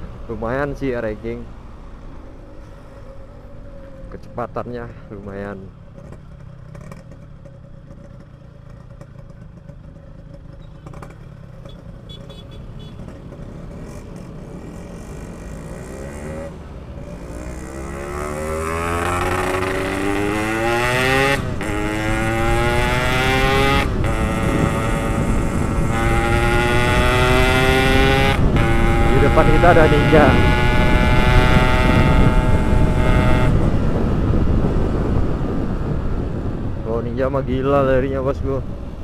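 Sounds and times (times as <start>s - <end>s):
two-stroke motorcycle engine accelerating: 5.8s - 12.4s, 13.0s - 36.7s.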